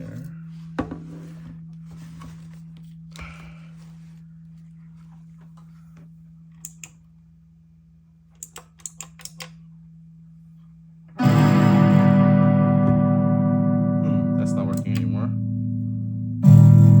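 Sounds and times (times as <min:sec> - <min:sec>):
electric guitar chord ringing: 0:11.2 - 0:17.0.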